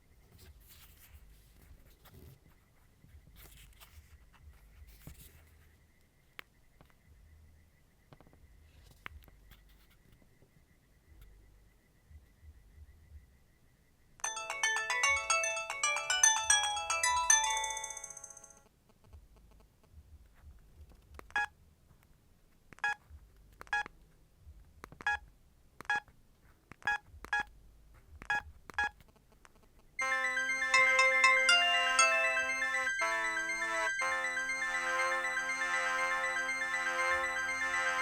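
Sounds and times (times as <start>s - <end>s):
polyphonic phone ringtone: 14.2s - 18.6s, 30.0s - 38.0s.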